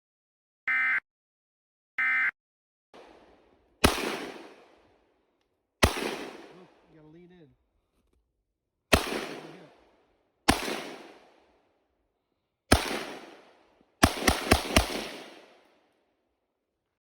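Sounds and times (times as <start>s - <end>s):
loud echoing bangs: 3.0s - 5.0s, 5.8s - 7.2s, 8.9s - 11.4s, 12.7s - 15.6s.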